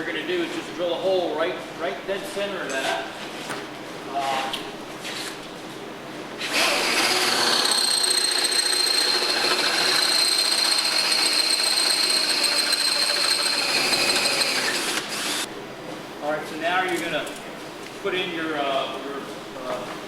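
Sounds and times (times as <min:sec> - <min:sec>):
power drill whining: 0:06.4 - 0:15.5.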